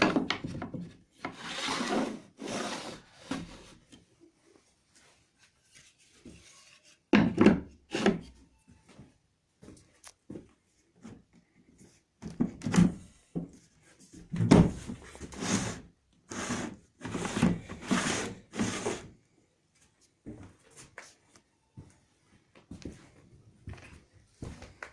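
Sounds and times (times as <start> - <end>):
wood scraping on wood: 1.2 - 3.8, 15.0 - 19.1.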